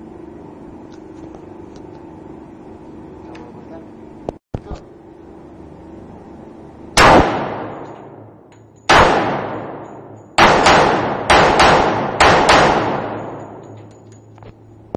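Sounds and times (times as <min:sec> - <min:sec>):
pistol shots with echo: 0:07.0 - 0:08.3, 0:08.9 - 0:13.8.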